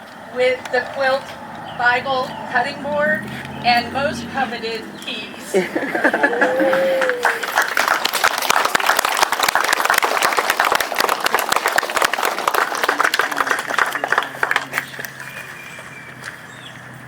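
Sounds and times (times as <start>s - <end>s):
crowd applauding: 5.6s - 15.3s.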